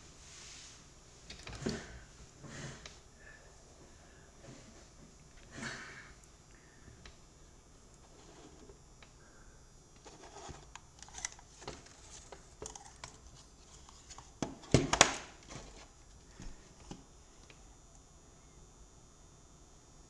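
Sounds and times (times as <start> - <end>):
small clicks and rustling: 10.0 - 17.6.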